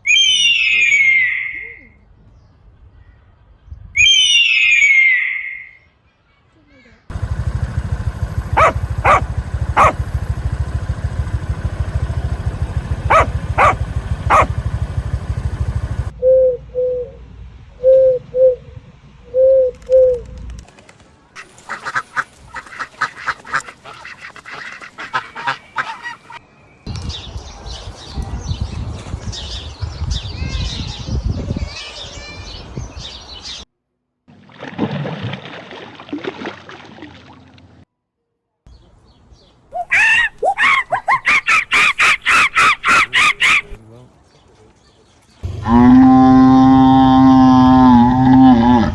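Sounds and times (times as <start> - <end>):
harsh bird calls: 7.1 - 16.1, 21.4 - 33.6, 39.4 - 43.8
short clear bird calls: 8.3 - 10.8, 12.4 - 14.5
high bird chattering: 8.4 - 10.4, 12.4 - 14.6, 39.8 - 43.8.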